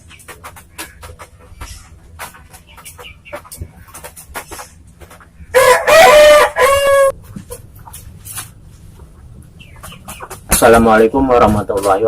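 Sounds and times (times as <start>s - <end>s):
rooster crowing: 5.5s - 7.2s.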